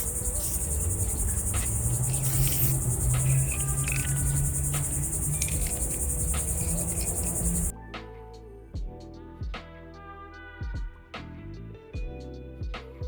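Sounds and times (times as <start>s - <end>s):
crickets chirping: 0.0s - 7.7s.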